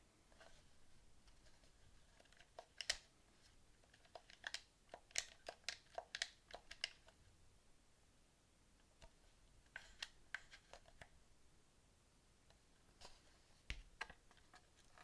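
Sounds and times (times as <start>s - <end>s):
game controller clicks: 2.2s - 3.1s, 3.9s - 7.1s.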